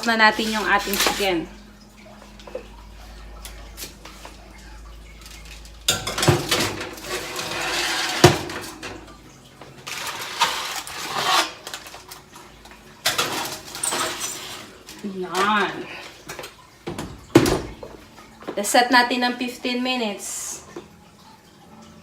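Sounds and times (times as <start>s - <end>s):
metal trays scraping oven racks: 0.1s - 1.6s, 5.9s - 9.0s, 9.9s - 12.1s, 13.0s - 16.1s.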